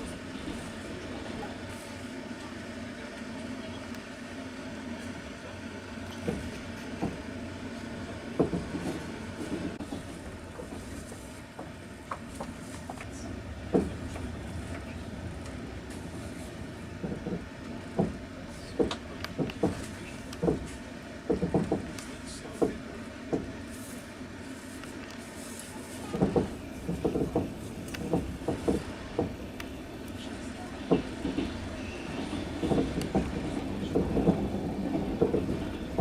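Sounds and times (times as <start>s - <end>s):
train carriage rumbling on rails: 0.0s - 36.0s
train wheels knocking and clacking: 6.1s - 7.4s, 8.3s - 23.6s, 26.0s - 36.0s.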